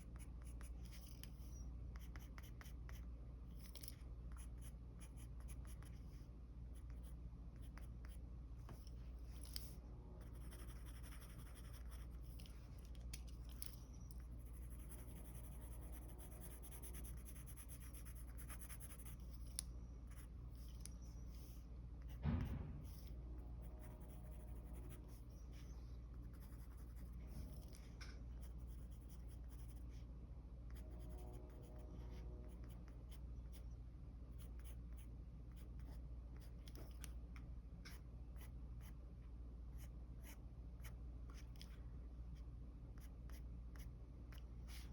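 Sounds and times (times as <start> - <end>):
low steady hum: 0.0 - 44.9
pencil scratching on paper: 4.3 - 8.2, 8.8 - 12.5, 13.5 - 30.0
soft thump: 22.1 - 23.1.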